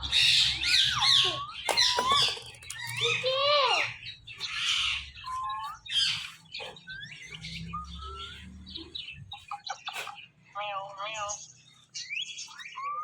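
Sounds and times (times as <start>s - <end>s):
parakeet screeching: 0.0s - 8.5s.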